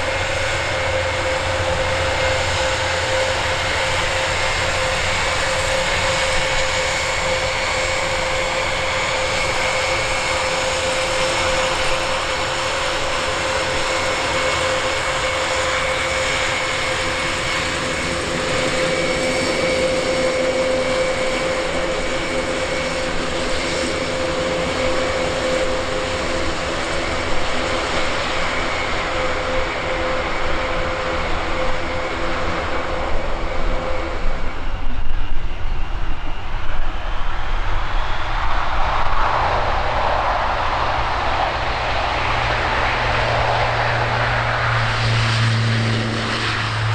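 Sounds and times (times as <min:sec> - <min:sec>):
high engine whine: 0:00.0 - 0:46.9
turboprop engines droning: 0:00.0 - 0:46.9.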